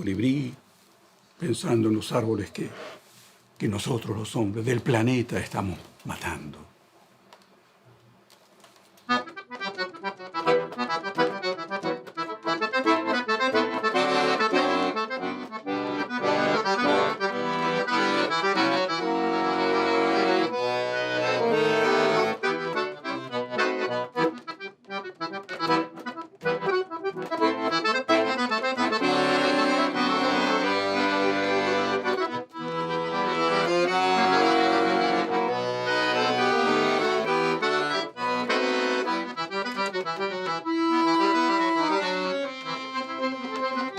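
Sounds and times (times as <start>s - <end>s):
accordion melody: 8.9s - 43.9s.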